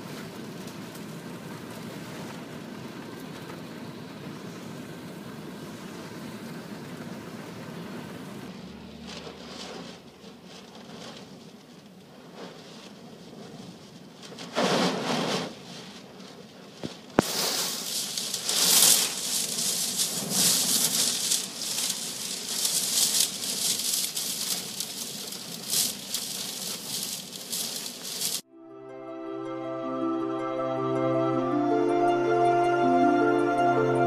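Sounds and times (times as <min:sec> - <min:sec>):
rough sea: 0:16.8 - 0:27.8
soft music: 0:28.4 - 0:34.0.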